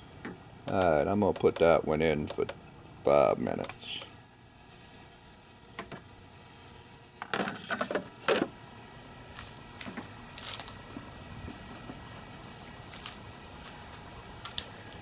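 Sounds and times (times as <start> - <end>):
ultrasonic cleaner hissing: 3.7 - 15.0.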